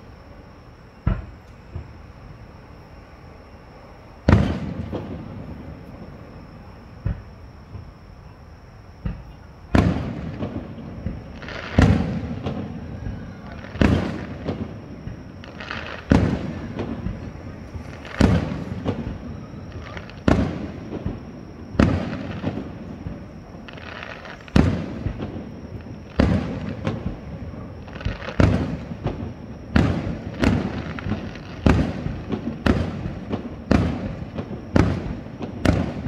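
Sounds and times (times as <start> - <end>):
firework shells booming: 4.2 - 5.6, 8.9 - 36.0
firework crackling: 9.0 - 36.0.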